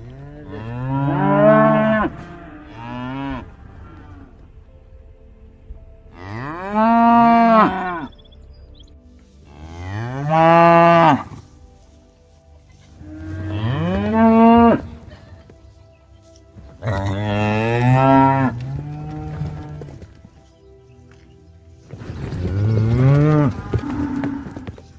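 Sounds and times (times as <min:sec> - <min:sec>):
cattle mooing: 0:00.0 - 0:04.5, 0:06.1 - 0:08.2, 0:09.5 - 0:11.3, 0:13.0 - 0:15.4, 0:16.8 - 0:20.0, 0:22.2 - 0:24.8.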